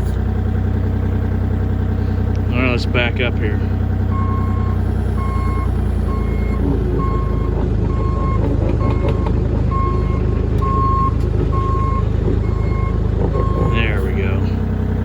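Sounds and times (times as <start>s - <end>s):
diesel engine running: 0.0s - 15.0s
backup alarm beeping: 4.1s - 14.2s.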